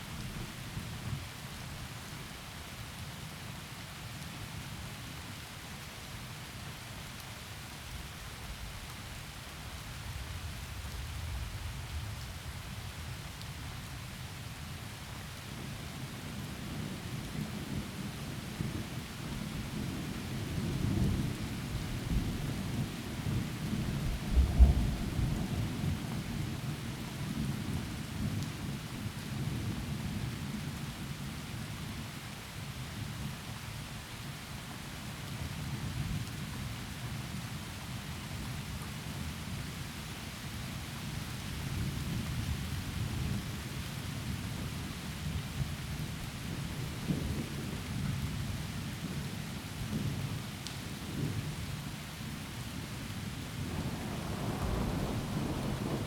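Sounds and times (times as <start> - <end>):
heavy rain through trees: 0.0 - 56.0
rolling thunder: 53.6 - 56.0.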